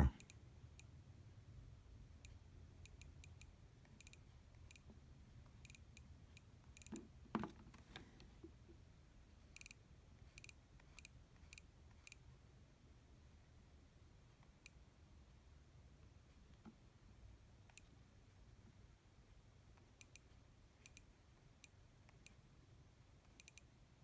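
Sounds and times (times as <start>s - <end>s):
small device clicks: 5.6s - 7.0s, 9.6s - 12.2s, 23.3s - 23.7s.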